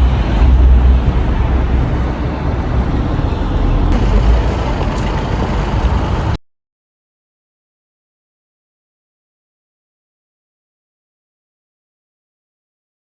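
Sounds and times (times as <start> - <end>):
road traffic rumble: 0.0 - 6.4.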